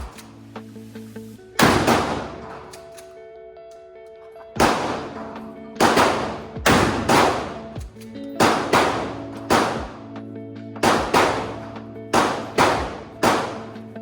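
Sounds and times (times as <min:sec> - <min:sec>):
background music: 0:00.0 - 0:14.0
gunshots with echo: 0:01.6 - 0:02.9, 0:04.6 - 0:10.1, 0:10.8 - 0:14.0.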